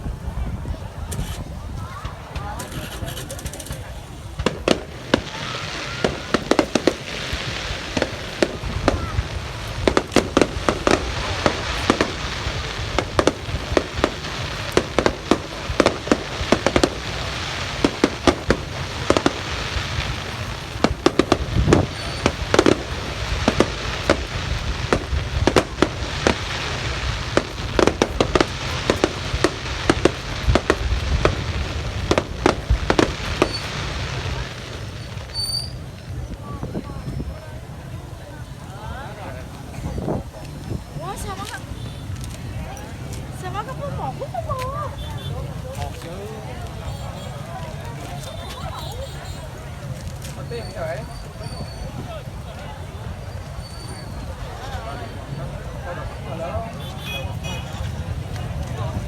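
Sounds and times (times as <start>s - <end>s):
fireworks crackling: 0.0s - 59.0s
fireworks bangs: 0.7s - 59.0s.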